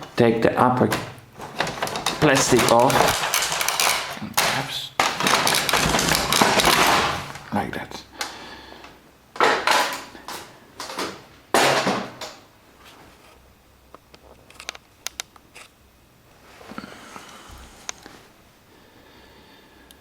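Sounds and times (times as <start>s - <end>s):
plastic casing rubbing and rattling: 0.8s - 7.5s.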